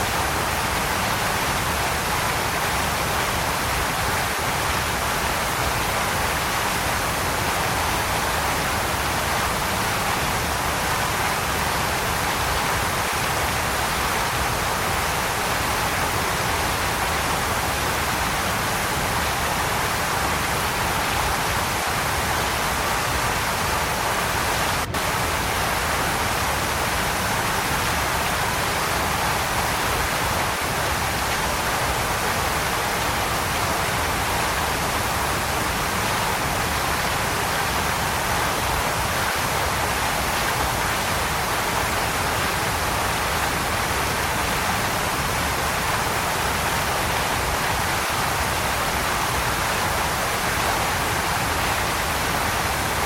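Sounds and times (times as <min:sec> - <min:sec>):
waterfall rushing: 0:00.0 - 0:53.0.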